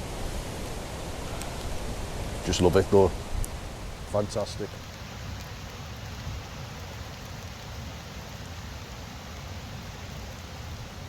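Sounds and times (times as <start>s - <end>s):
wind rumble on microphone: 0.0s - 7.5s
wind in woodland: 0.0s - 11.0s.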